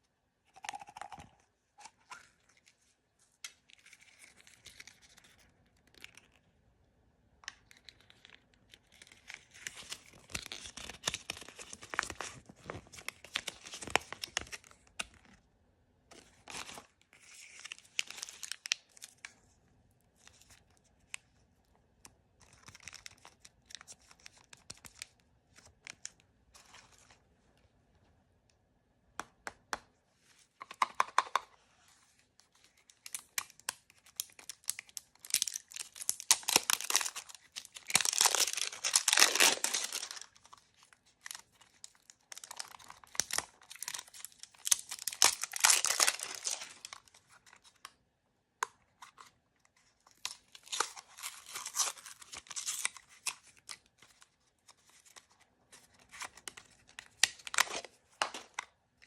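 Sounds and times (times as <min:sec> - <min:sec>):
plastic wrappers crinkling: 0:32.6 - 0:47.8, 0:50.1 - 0:55.3.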